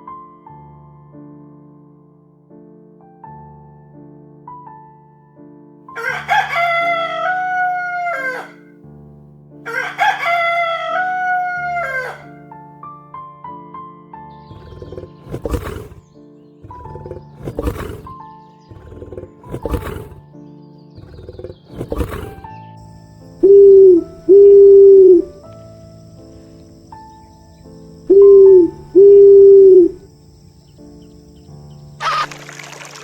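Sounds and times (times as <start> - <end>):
soft piano music: 0.0 - 6.0, 6.7 - 9.7, 10.5 - 15.2, 20.2 - 21.7, 22.3 - 32.0
rough noisy animal call: 6.0 - 8.6, 9.7 - 12.4, 14.4 - 20.4, 21.0 - 32.3
rooster crowing: 6.0 - 8.7, 9.7 - 12.4, 23.4 - 25.3, 28.0 - 30.0.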